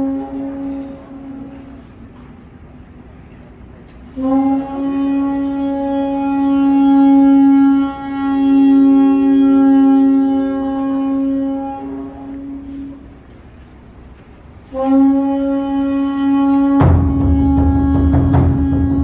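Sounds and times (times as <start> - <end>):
wind instrument long note: 4.1 - 13.2, 14.6 - 19.0.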